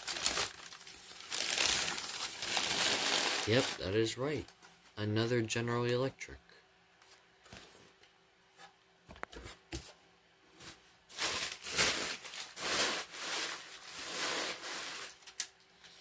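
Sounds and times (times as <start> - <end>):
packaging rustling: 0.0 - 3.8, 11.1 - 15.5.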